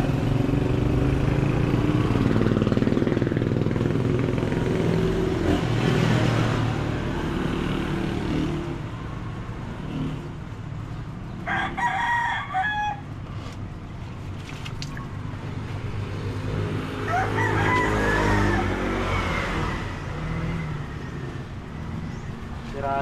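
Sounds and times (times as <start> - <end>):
roadside traffic noise: 0.0 - 23.0
vehicle engine rumble passing: 0.0 - 23.0
rooster crowing: 11.4 - 13.2, 16.8 - 19.3.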